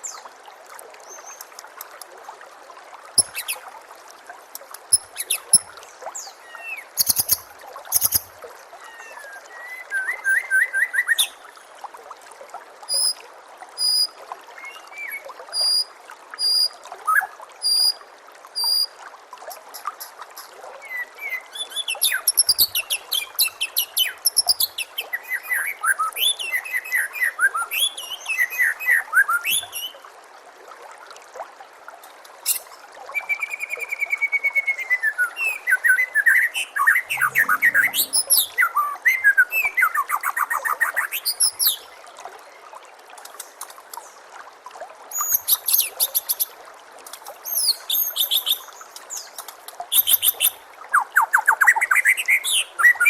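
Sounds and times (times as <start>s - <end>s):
running water trickling: 0.0s - 53.0s
bird singing whistled trills: 3.2s - 3.6s, 33.2s - 40.0s.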